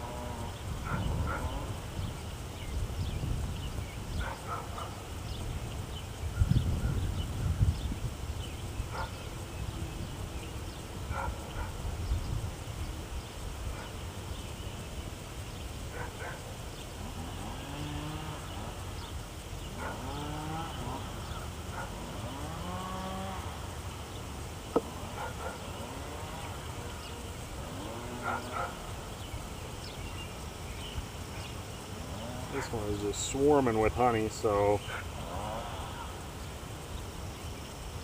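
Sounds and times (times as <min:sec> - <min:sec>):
distant cattle mooing: 0:00.0 - 0:01.9, 0:17.0 - 0:18.9, 0:19.7 - 0:23.9, 0:24.7 - 0:29.2, 0:31.9 - 0:33.3, 0:34.9 - 0:36.4.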